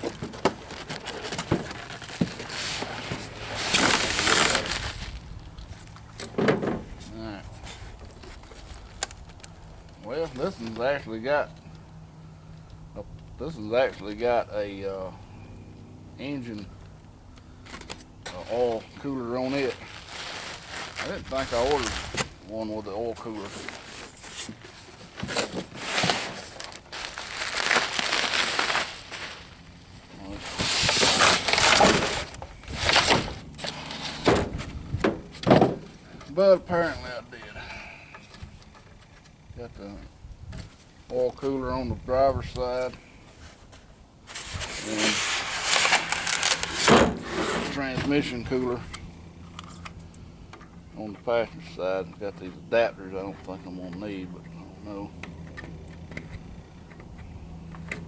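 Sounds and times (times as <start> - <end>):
packing material crinkling: 0.0 - 5.3, 18.5 - 22.4, 23.3 - 34.0, 44.3 - 46.9
cardboard rustling and scraping: 0.0 - 9.0, 18.4 - 22.4, 23.0 - 37.2, 42.8 - 49.0.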